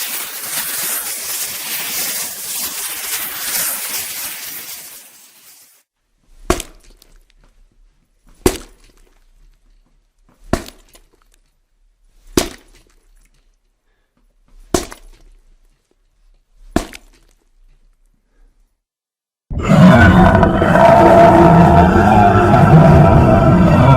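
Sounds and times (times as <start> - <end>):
loud hissing effect: 0.0 - 5.8.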